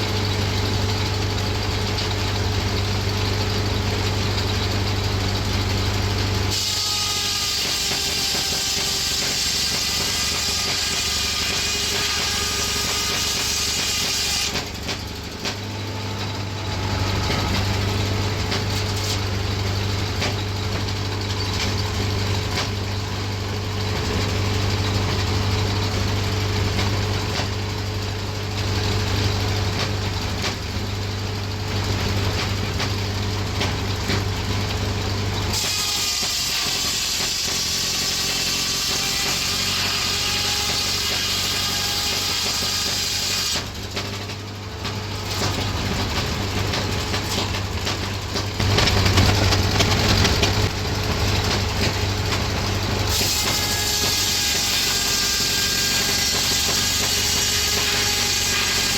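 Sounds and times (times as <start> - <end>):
engine running: 0.0 - 6.7, 7.9 - 35.6, 41.8 - 58.9
circular saw whine: 0.0 - 26.4, 45.0 - 58.9.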